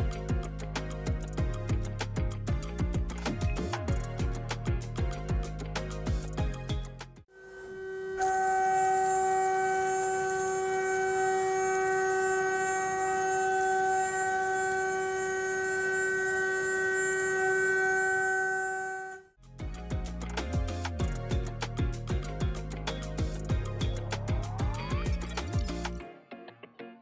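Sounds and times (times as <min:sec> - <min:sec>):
background music: 0:00.0 - 0:07.3, 0:19.4 - 0:27.0
milling spindle high-pitched whine: 0:07.3 - 0:19.3.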